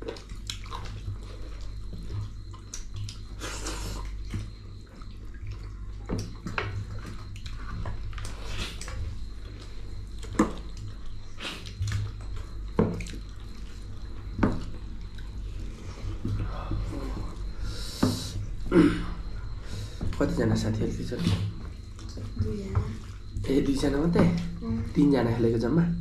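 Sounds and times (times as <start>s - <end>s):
chewing with wet lip smacks: 0.0s - 16.2s
steady low hum: 0.0s - 26.0s.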